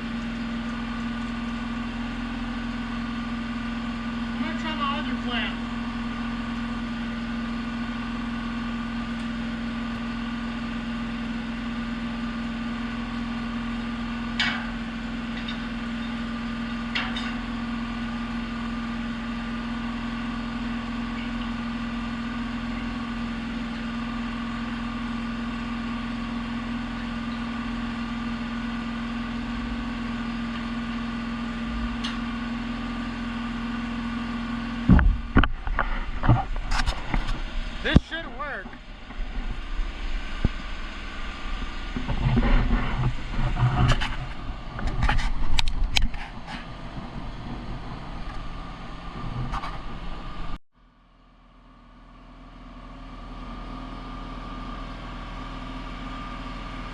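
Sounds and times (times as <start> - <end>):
machine humming: 34.1 - 50.6.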